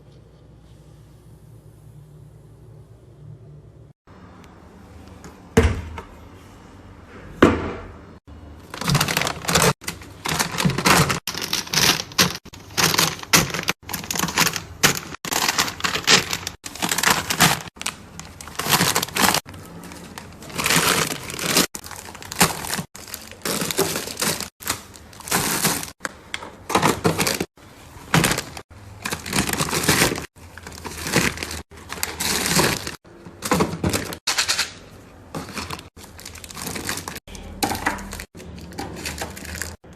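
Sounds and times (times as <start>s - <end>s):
packaging crinkling: 8.6s - 39.8s
household items clacking: 8.7s - 39.8s.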